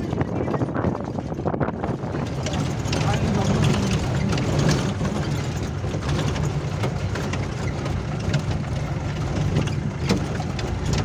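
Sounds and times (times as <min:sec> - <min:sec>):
vehicle engine rumbling: 0:00.0 - 0:11.0
rattling clicks: 0:01.0 - 0:11.0.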